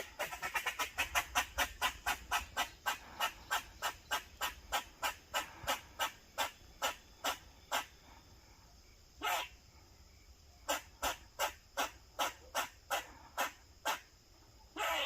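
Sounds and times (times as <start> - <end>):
squirrel barking: 9.2 - 9.5, 14.8 - 15.0.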